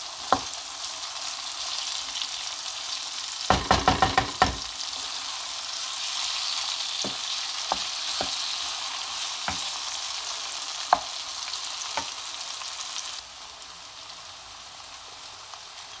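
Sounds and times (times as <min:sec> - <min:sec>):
food sizzling in a pan: 0:00.0 - 0:16.0
utensil knocking against pan: 0:03.5 - 0:04.7.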